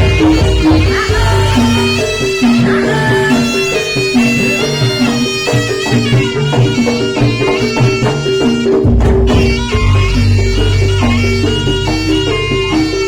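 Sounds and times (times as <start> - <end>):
drums and gamelan percussion: 0.0 - 13.0
reedy wind instrument melody: 0.0 - 13.0
deep low tone: 9.7 - 13.0.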